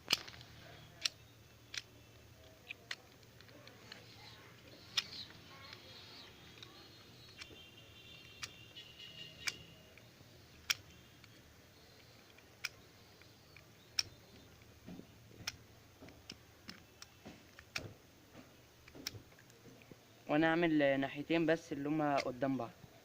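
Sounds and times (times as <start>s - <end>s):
hand tools and metal parts clicking: 0.0s - 18.0s.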